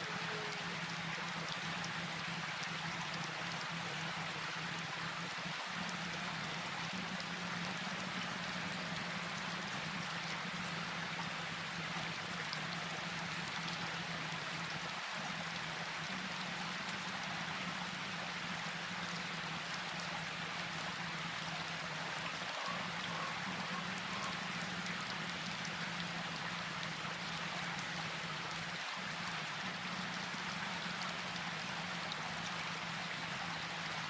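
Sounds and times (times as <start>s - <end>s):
steady rain hiss: 0.0s - 34.0s.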